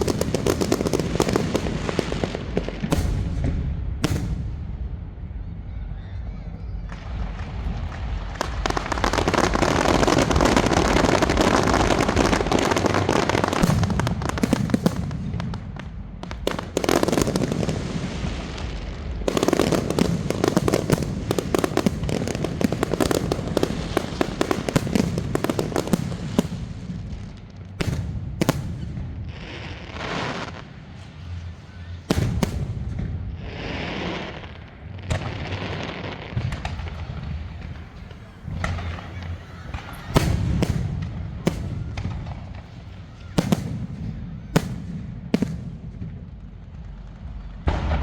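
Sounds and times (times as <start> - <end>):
firecrackers crackling: 0.0 - 48.0
loud single bangs: 2.8 - 5.0.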